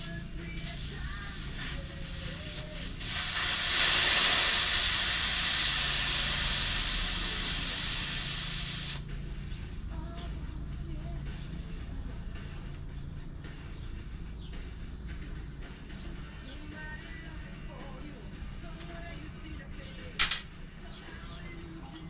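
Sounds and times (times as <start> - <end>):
air hissing from tire valve: 0.0 - 15.9.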